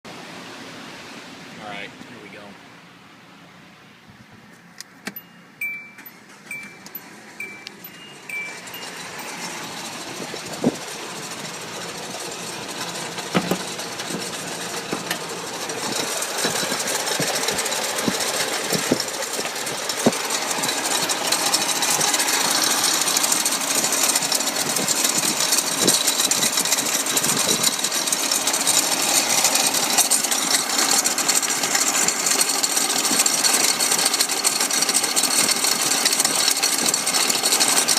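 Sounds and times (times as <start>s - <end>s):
car engine running: 4.3s - 37.9s
short beeps: 5.1s - 9.4s
compressor rattling and knocking: 7.8s - 37.9s.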